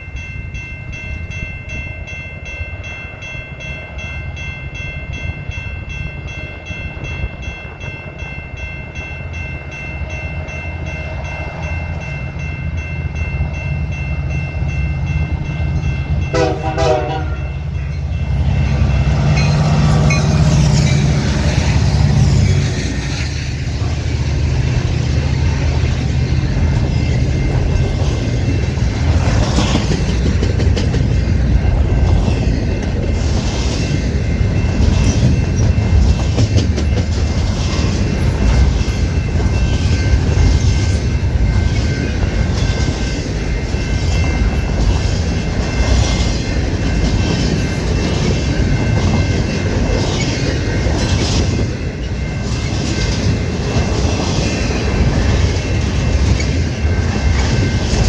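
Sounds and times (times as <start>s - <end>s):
freight train rumbling past: 0.0s - 58.0s
steel wheels clacking over rails: 18.0s - 58.0s.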